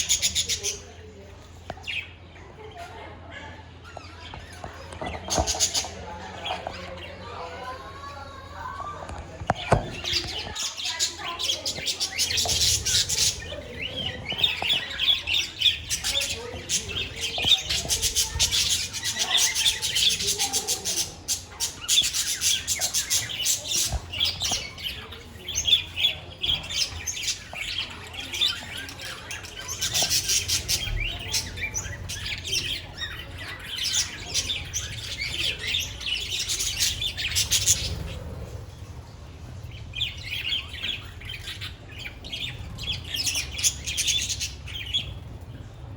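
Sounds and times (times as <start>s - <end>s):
budgerigars chirping and squawking: 0.0s - 8.3s, 9.3s - 45.9s.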